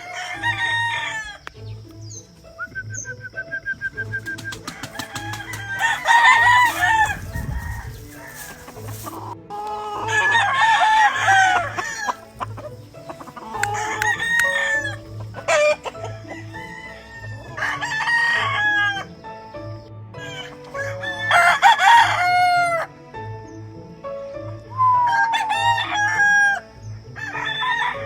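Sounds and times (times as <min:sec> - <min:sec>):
roosters crowing: 0:00.0 - 0:01.5, 0:04.1 - 0:19.2, 0:20.2 - 0:23.0, 0:24.7 - 0:28.0
chickens clucking: 0:00.0 - 0:19.5.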